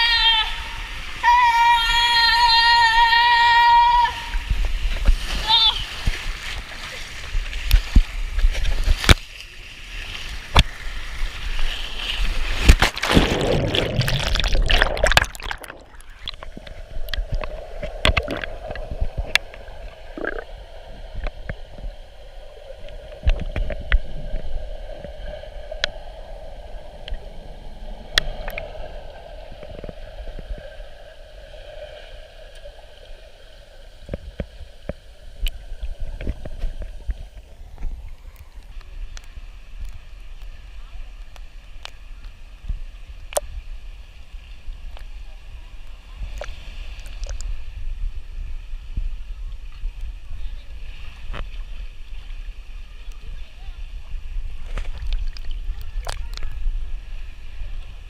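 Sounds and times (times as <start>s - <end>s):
water rushing down slide: 10.0s - 20.5s
water gurgling: 10.4s - 42.3s, 44.6s - 58.0s.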